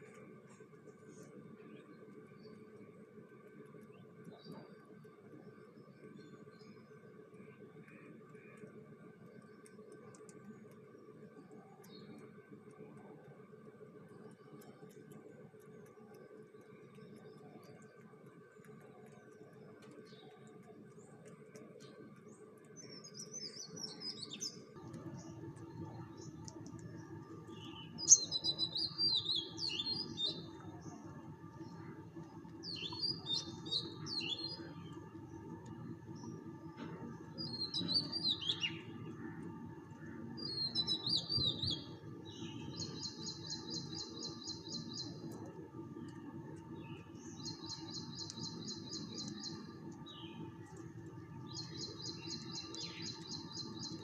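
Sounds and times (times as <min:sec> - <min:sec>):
steady background hum: 0:00.0 - 0:54.0
small bird chirping and trilling: 0:23.0 - 0:31.0, 0:32.6 - 0:35.2, 0:37.4 - 0:39.1, 0:40.4 - 0:45.2, 0:46.9 - 0:50.8, 0:51.5 - 0:54.0.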